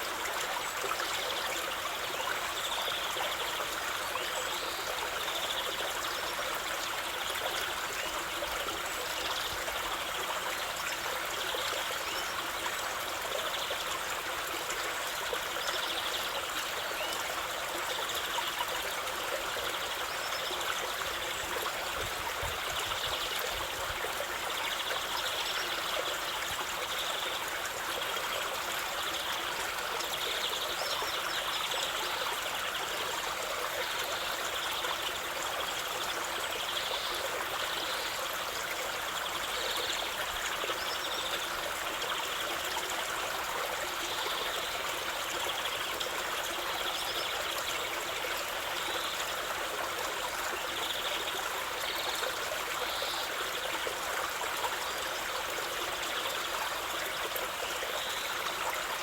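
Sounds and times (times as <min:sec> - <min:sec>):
stream of running water: 0:00.0 - 0:59.0.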